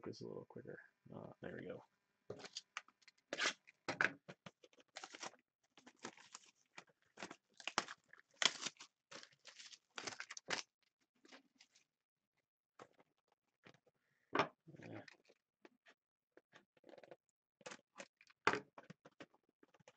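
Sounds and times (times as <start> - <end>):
packaging tearing and crinkling: 2.4 - 3.7, 4.9 - 6.6, 7.2 - 10.7.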